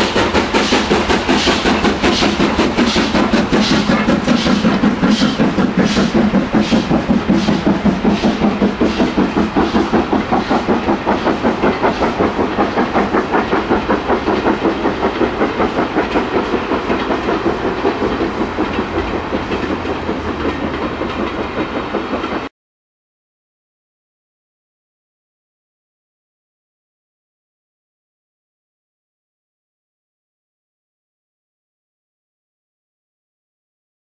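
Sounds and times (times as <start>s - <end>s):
steam locomotive exhaust beats: 0.0s - 22.5s.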